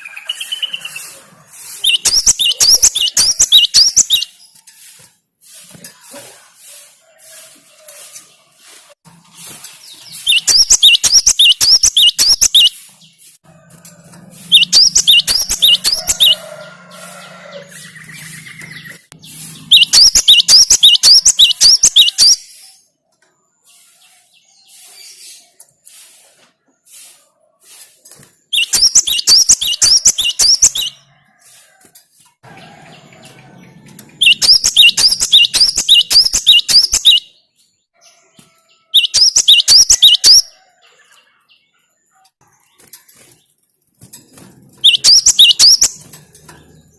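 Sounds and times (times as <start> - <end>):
bird singing high notes: 17.5 - 22.4.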